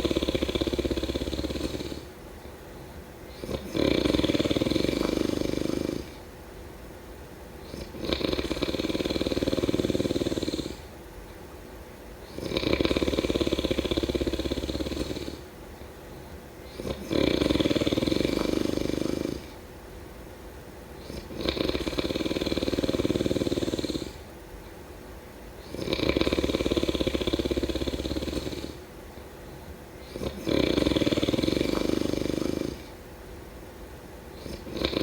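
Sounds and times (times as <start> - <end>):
person snoring: 0.0 - 2.1, 3.3 - 6.2, 7.6 - 10.9, 12.2 - 15.5, 16.6 - 19.6, 21.0 - 24.3, 25.6 - 28.9, 30.0 - 33.0, 34.4 - 35.0
quiet breathing: 0.0 - 6.7, 7.5 - 11.5, 12.1 - 19.7, 20.9 - 24.8, 25.5 - 33.4, 34.2 - 35.0.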